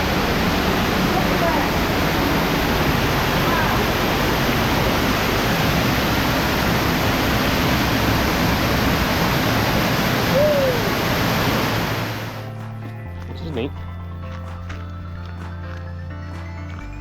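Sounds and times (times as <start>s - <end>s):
waterfall rushing: 0.0s - 12.5s.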